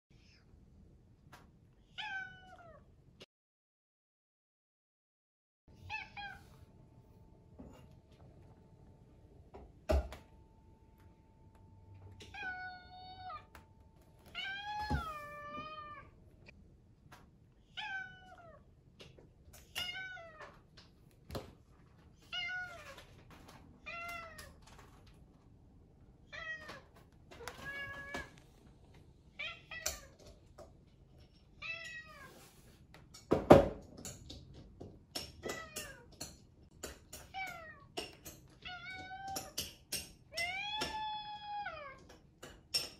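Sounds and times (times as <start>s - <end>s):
cat meowing: 1.9s - 2.9s, 5.8s - 6.5s, 12.2s - 13.6s, 14.4s - 16.2s, 17.7s - 18.6s.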